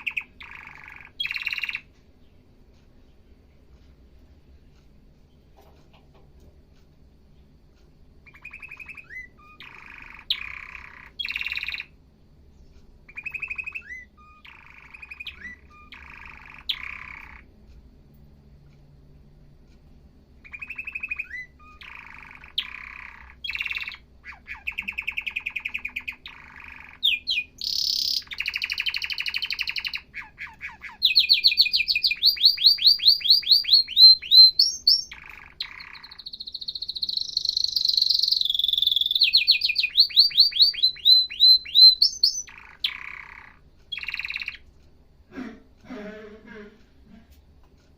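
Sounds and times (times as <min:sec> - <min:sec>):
canary singing trilled phrases: 0:00.0 - 0:02.0, 0:08.2 - 0:12.0, 0:13.0 - 0:17.6, 0:20.4 - 0:44.8.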